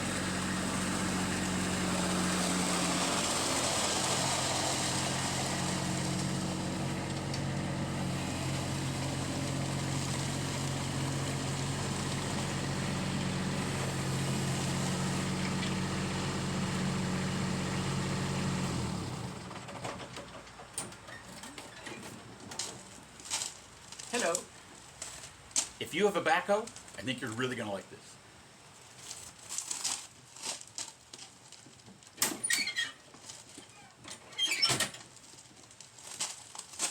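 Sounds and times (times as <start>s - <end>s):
tractor diesel engine running: 0.0s - 20.8s.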